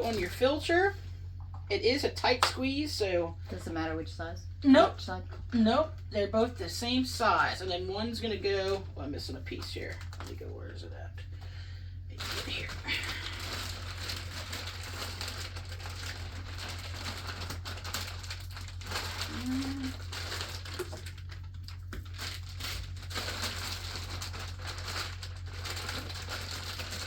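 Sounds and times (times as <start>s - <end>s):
plastic packaging crinkling: 0.0s - 0.7s, 8.0s - 10.4s, 12.2s - 27.0s
steady low hum: 0.0s - 27.0s.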